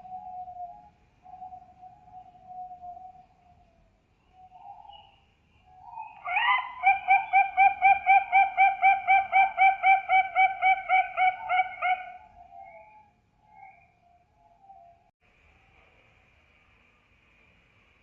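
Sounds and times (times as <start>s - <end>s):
dove cooing: 5.8s - 12.4s.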